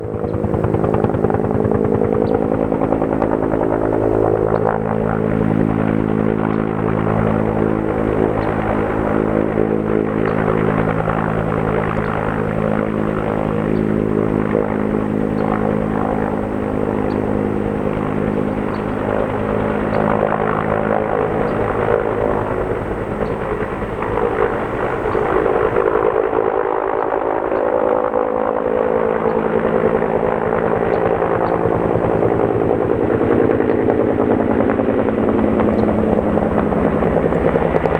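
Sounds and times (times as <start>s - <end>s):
turbine engine running: 0.0s - 26.1s
helicopter rotor beating: 0.0s - 37.9s.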